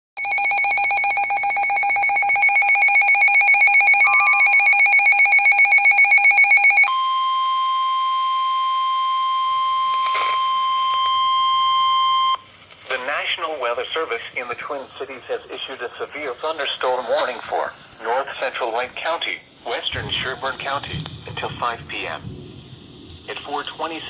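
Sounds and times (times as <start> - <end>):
steady single-pitch alert tone: 0.2 - 6.9
warbling electronic alarm: 0.2 - 12.4.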